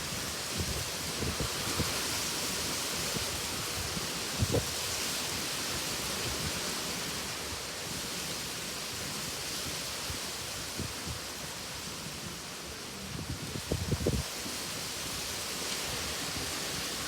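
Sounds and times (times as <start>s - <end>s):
wind gusts buffeting microphone: 0.0s - 6.7s, 12.7s - 17.0s
light rain: 0.0s - 17.0s
wind: 0.0s - 17.0s.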